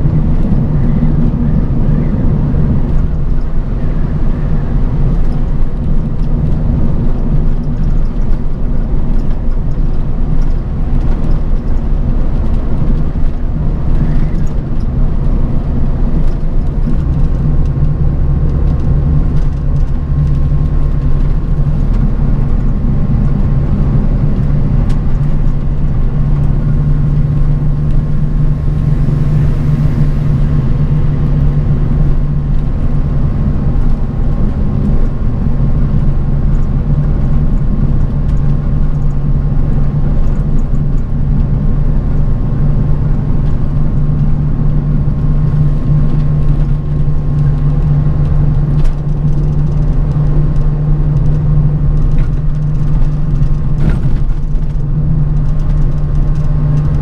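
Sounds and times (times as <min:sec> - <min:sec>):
bus engine drone: 0:00.0 - 0:57.0
road noise: 0:00.0 - 0:57.0
hiss: 0:28.1 - 0:31.8.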